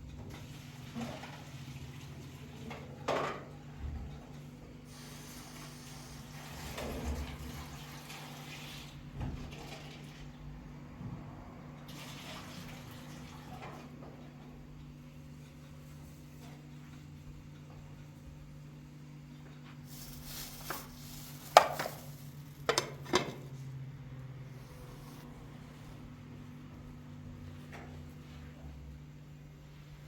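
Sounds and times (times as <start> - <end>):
water running: 4.9 - 10.1.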